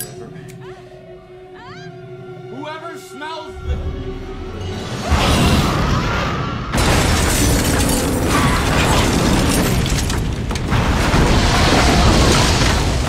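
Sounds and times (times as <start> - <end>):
crashing shattering debris: 6.7 - 13.0.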